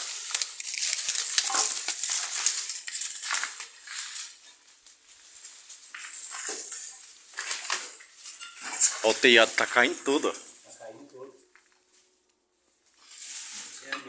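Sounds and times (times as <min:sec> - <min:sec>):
dry debris crunching underfoot: 0:00.0 - 0:10.8.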